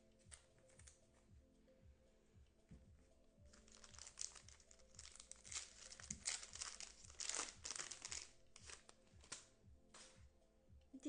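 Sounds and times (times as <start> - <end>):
faint background music with beat: 0.0 - 11.0
foil wrapper crinkling and tearing: 3.5 - 9.5.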